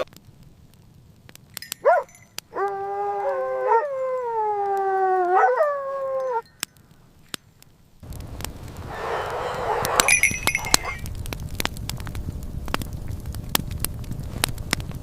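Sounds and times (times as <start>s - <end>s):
animal howling: 1.9s - 6.5s, 8.9s - 11.1s.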